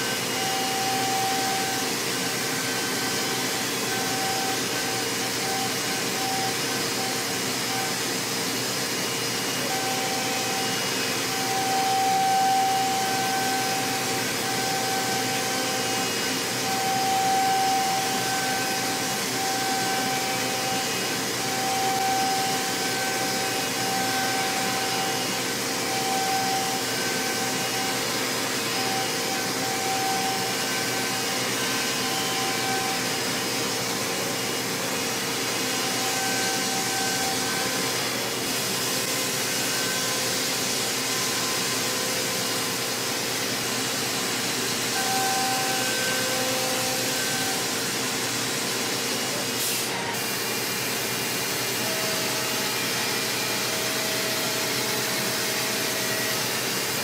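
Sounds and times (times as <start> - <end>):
milling machine whirring hiss: 0.0 - 57.0.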